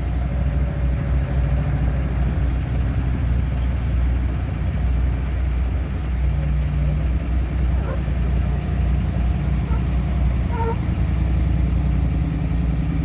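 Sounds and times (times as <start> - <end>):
car engine rumbling: 0.0 - 13.0.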